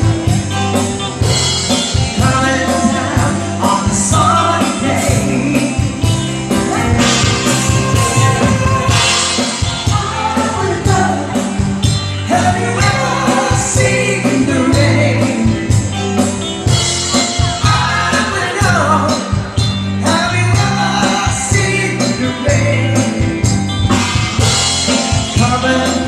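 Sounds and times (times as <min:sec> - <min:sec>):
bass guitar: 0:00.0 - 0:26.0
drums: 0:00.0 - 0:26.0
person singing: 0:02.0 - 0:15.9, 0:17.3 - 0:23.4, 0:25.1 - 0:26.0.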